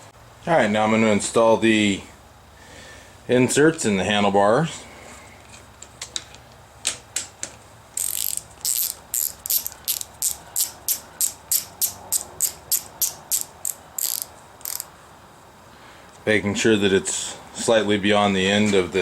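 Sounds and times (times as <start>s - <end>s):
ratchet wrench clicking: 8.0s - 14.9s.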